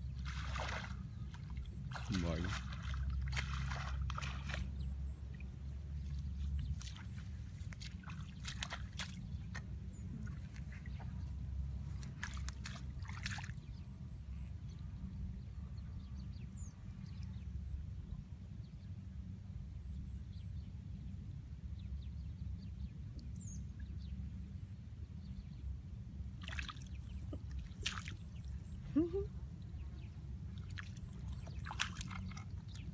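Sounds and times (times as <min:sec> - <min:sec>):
water sloshing and splashing: 0:00.0 - 0:13.7, 0:26.4 - 0:32.9
steady low rumble: 0:00.0 - 0:32.9
sharp splashes: 0:00.2 - 0:01.0, 0:01.6 - 0:04.7, 0:06.7 - 0:09.2, 0:12.2 - 0:13.6, 0:26.4 - 0:28.5, 0:30.5 - 0:32.9.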